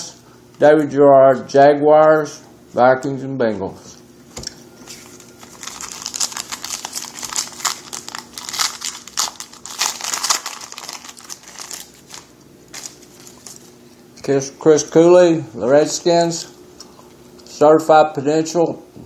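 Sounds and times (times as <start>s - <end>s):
foil wrapper crinkling: 4.9s - 13.8s.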